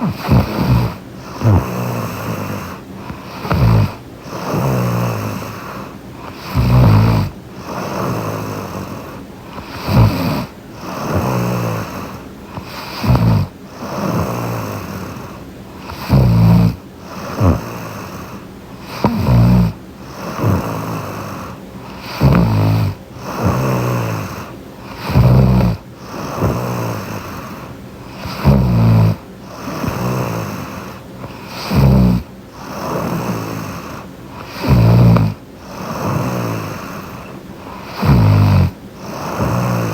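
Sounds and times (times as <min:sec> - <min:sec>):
woman snoring: 0:00.0 - 0:39.9.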